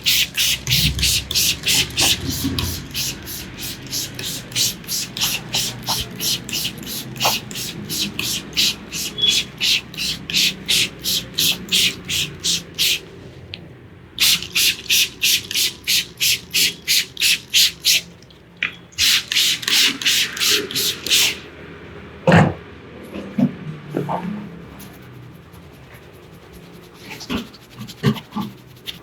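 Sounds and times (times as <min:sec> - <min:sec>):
hands rubbing scalp and hair: 0:00.0 - 0:13.0, 0:19.1 - 0:21.5.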